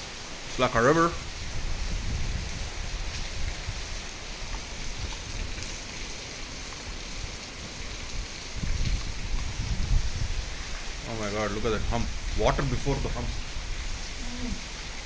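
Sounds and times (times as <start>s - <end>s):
rainwater running along street: 0.0s - 15.0s
steady rain falling: 0.0s - 15.0s.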